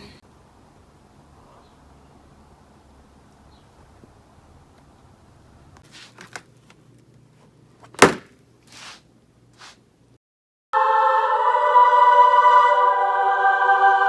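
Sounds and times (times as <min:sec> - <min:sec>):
sharp knock: 0:08.0 - 0:08.3
background music: 0:10.8 - 0:14.0.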